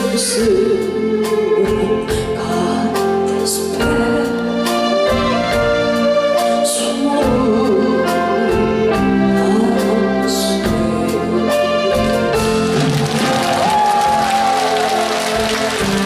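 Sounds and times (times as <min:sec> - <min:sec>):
live band playing ballad: 0:00.0 - 0:16.0.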